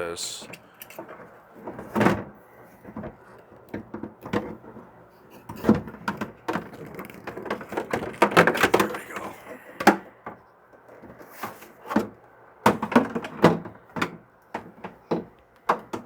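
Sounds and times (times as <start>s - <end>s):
plastic parts knocking and clicking: 5.5s - 9.0s.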